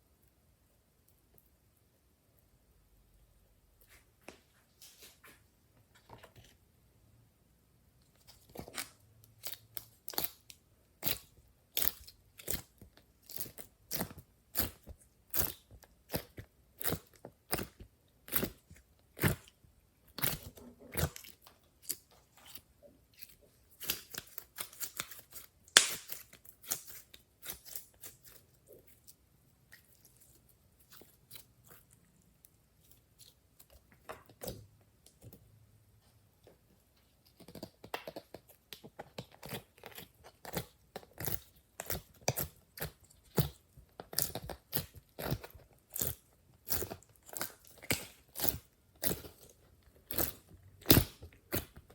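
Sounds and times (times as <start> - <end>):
slime clicking and popping: 23.8 - 27.8.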